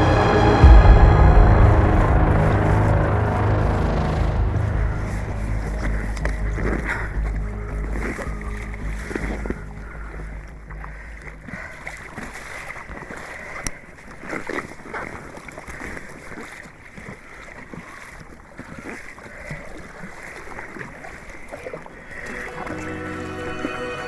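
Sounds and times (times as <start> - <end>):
water splashing around kayak: 1.9 - 24.0.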